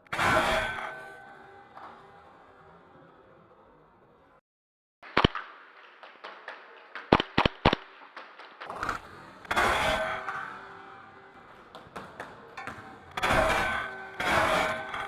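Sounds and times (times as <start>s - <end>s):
airsoft gun shots: 5.0s - 5.6s.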